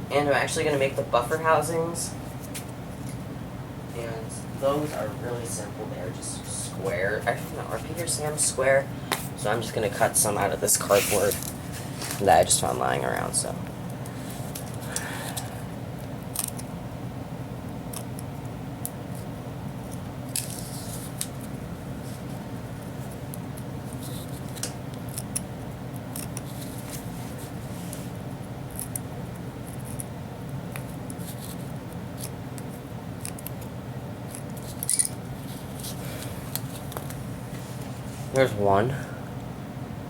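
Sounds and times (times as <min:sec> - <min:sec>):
steady low hum: 0:00.0 - 0:40.0.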